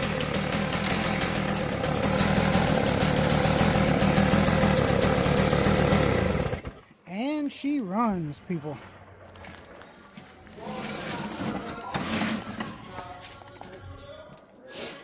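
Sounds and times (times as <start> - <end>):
snowblower engine running: 0.0 - 6.8.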